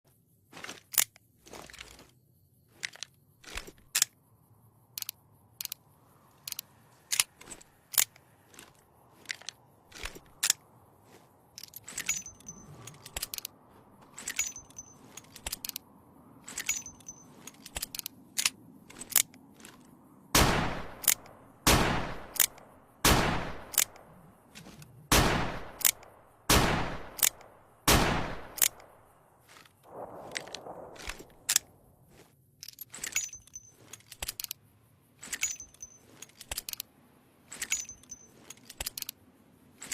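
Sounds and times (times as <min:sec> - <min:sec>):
gunshots: 0:20.3 - 0:24.0, 0:25.1 - 0:28.8.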